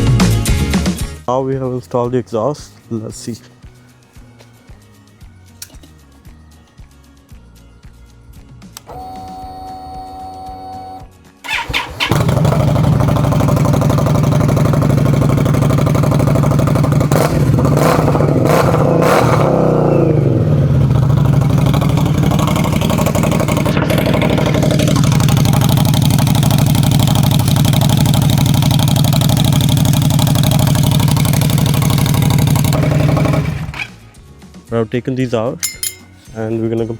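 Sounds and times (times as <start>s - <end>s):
motorcycle engine idling and revving: 8.8s - 34.2s.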